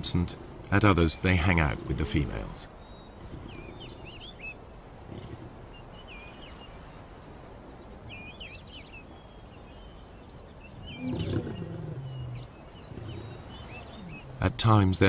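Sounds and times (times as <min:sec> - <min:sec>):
birds chirping: 0:00.0 - 0:15.0
animal grunt-like call: 0:11.0 - 0:14.5.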